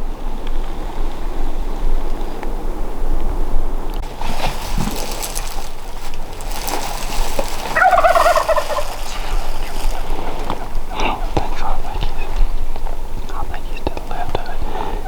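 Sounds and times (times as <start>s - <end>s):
turkey gobbling: 4.0s - 13.1s.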